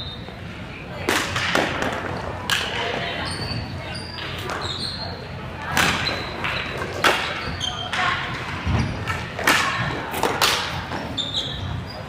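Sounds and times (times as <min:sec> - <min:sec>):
hockey sticks striking ball: 0:01.1 - 0:03.0, 0:05.7 - 0:11.1.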